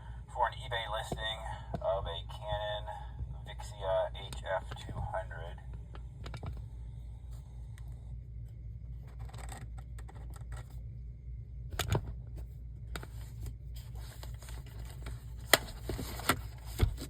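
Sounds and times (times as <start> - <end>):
steady low hum: 0.0 - 17.0
small clicks and scraping: 9.0 - 10.8.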